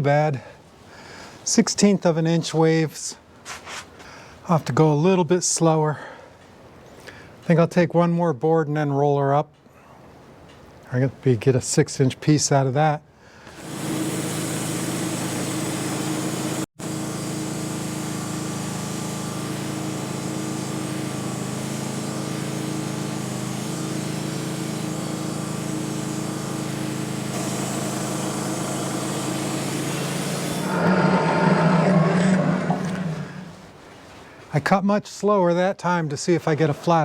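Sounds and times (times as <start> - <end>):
band saw blade cutting log: 13.5 - 14.8, 20.8 - 33.8
sawmill gas engine running: 13.5 - 33.8.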